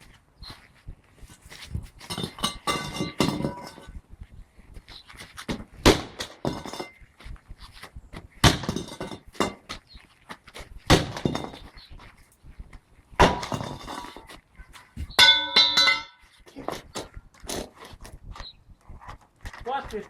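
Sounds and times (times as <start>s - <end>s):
sharp thuds: 8.4s - 9.8s, 10.8s - 11.8s, 13.1s - 14.3s.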